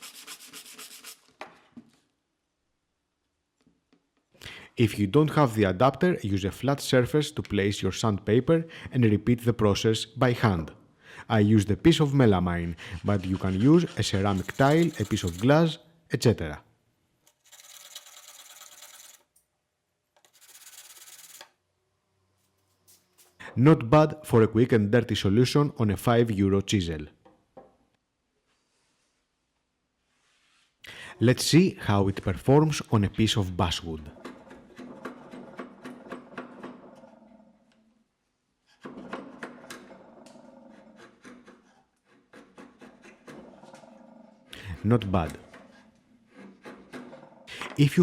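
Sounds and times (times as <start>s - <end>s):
chisel scraping on sandpaper: 0.0s - 1.3s, 12.3s - 15.7s, 17.4s - 19.2s, 20.2s - 21.5s, 40.7s - 43.5s, 44.9s - 47.1s
chisel cutting wood strokes: 12.6s - 15.6s, 34.1s - 36.8s, 38.6s - 43.8s, 44.8s - 47.3s.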